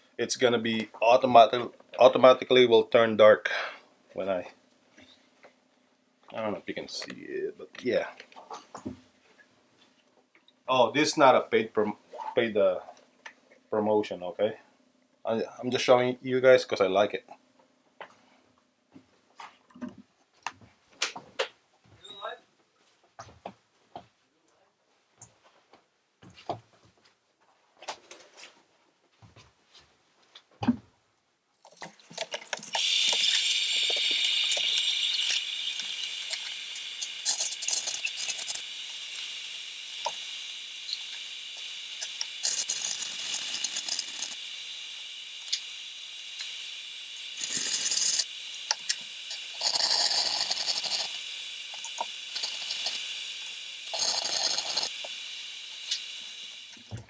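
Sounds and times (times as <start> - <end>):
welding arc crackling: 31.7 - 57.0
welding arc hissing: 31.7 - 57.0.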